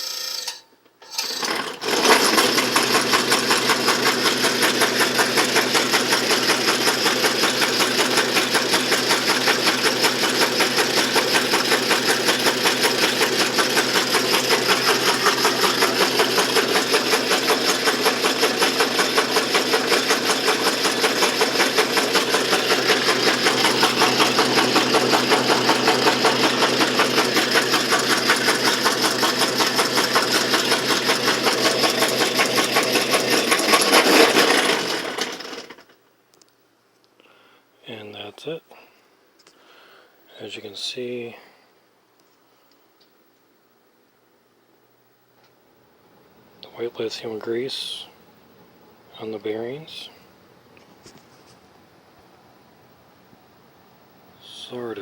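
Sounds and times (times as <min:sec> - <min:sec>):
can crusher running: 0:00.0 - 0:35.9.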